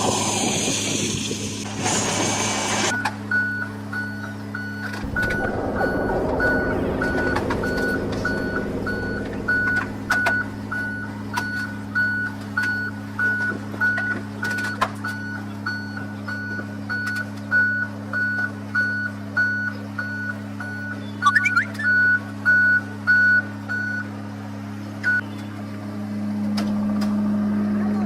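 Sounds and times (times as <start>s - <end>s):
heavy engine running: 0.0s - 28.0s
reversing alarm beeping: 2.9s - 24.1s
knocks and clanks: 4.9s - 12.8s.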